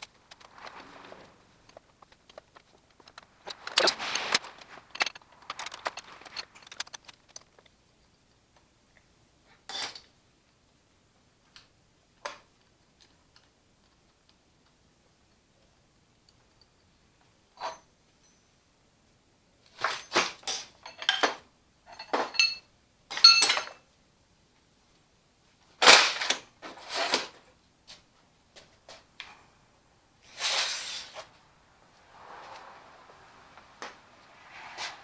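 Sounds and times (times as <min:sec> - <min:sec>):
rattling scrape: 0:00.0 - 0:07.5, 0:30.2 - 0:31.4, 0:32.1 - 0:35.0
metal tools clanking: 0:00.2 - 0:07.4, 0:19.8 - 0:23.8.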